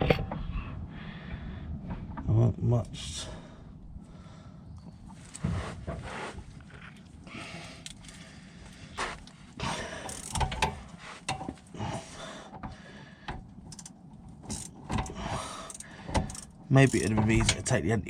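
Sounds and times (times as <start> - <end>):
hand tools clicking on metal: 9.7 - 17.9.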